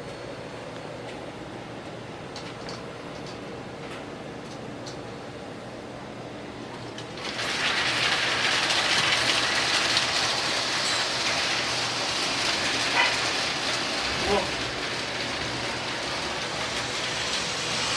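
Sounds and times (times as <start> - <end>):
model train rattling on track: 7.2 - 17.9.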